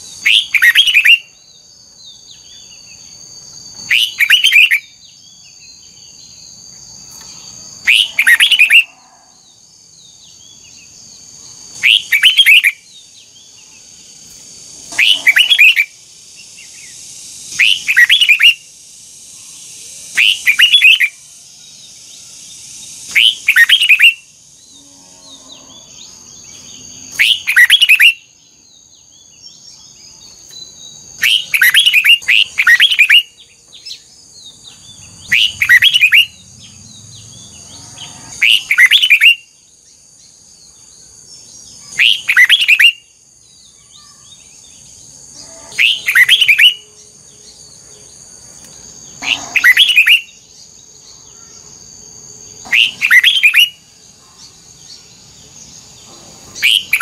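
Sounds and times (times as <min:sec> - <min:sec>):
faint high-pitched hum: 0:00.0 - 0:57.0
bird singing whistled phrases: 0:00.2 - 0:01.3, 0:03.8 - 0:05.0, 0:11.8 - 0:12.8, 0:15.0 - 0:15.9, 0:16.6 - 0:18.6, 0:20.2 - 0:21.2, 0:23.1 - 0:24.2, 0:27.2 - 0:28.3, 0:31.2 - 0:33.4, 0:35.3 - 0:36.4, 0:38.4 - 0:39.5, 0:41.8 - 0:43.1, 0:45.8 - 0:46.9, 0:49.3 - 0:50.4, 0:52.8 - 0:53.8, 0:56.6 - 0:57.0.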